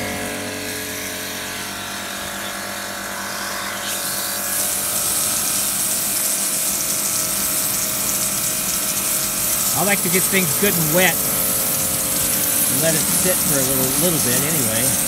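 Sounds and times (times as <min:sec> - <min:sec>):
pressure washer motor humming: 0:00.0 - 0:15.0
water spray hissing on wood: 0:03.8 - 0:15.0.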